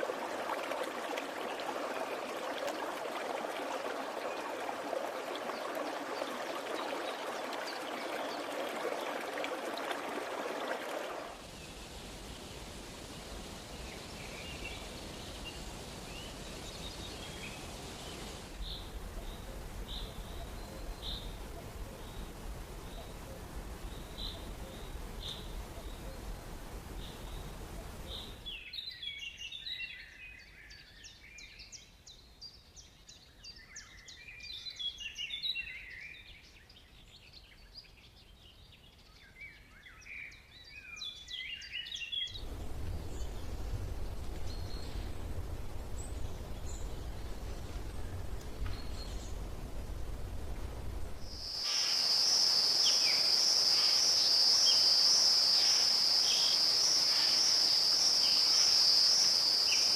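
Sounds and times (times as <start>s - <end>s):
birds chirping and twittering: 13.6s - 52.0s
steady low rumble: 42.4s - 51.4s.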